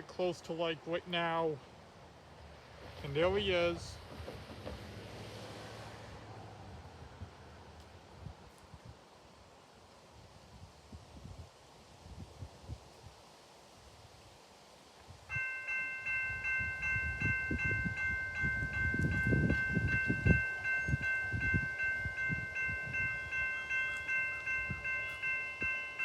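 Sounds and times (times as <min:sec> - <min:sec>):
railroad crossing bell ringing: 0:15.3 - 0:26.0
low gusty rumbling: 0:16.2 - 0:26.0.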